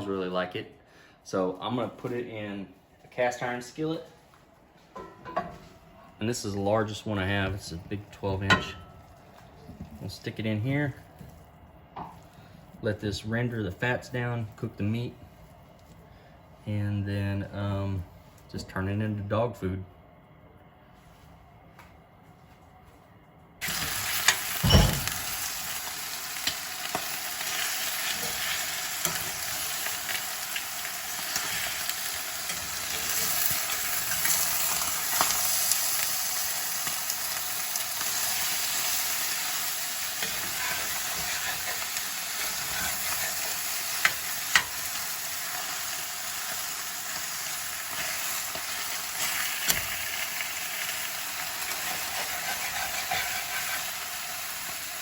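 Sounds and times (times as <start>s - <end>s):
fat sizzling in a skillet: 23.6s - 55.0s.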